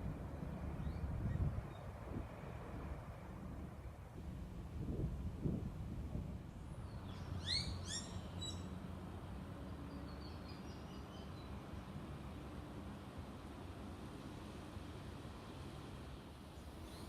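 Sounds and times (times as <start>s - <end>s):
faint bird twittering: 6.8s - 8.7s, 16.6s - 17.0s
bird chirping: 6.9s - 8.7s.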